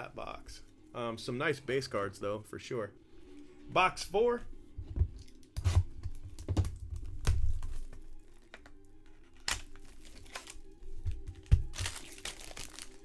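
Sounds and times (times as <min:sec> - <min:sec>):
foil wrapper crinkling and tearing: 0:09.3 - 0:10.8, 0:11.4 - 0:13.0.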